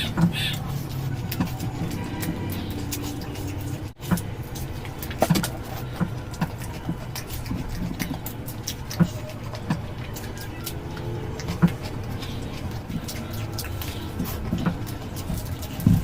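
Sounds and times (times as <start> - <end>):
chewing clicks and smacks: 0.0 - 16.0.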